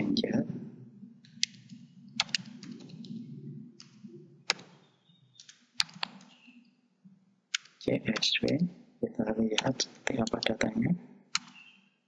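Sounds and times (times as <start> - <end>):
keyboard keystrokes: 1.3 - 3.2, 5.4 - 6.4, 9.6 - 10.6, 11.4 - 11.6.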